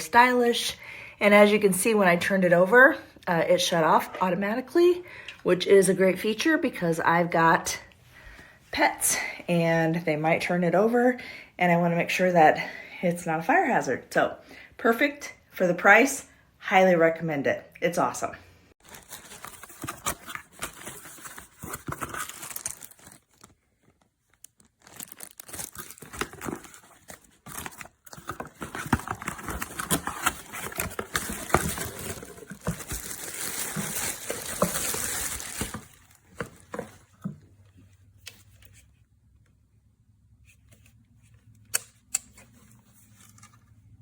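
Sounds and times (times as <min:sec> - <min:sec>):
crinkling and rustling handling noise: 0:18.8 - 0:39.6, 0:40.3 - 0:44.0.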